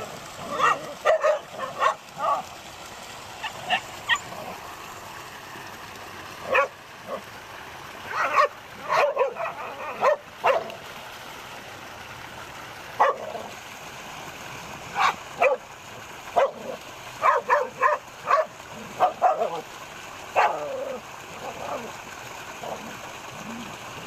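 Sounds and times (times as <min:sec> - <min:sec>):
animal barking and yelping: 0:00.2 - 0:02.5, 0:03.4 - 0:04.6, 0:06.4 - 0:07.3, 0:08.1 - 0:10.8, 0:13.0 - 0:13.6, 0:14.9 - 0:15.6, 0:16.3 - 0:19.7, 0:20.3 - 0:22.0.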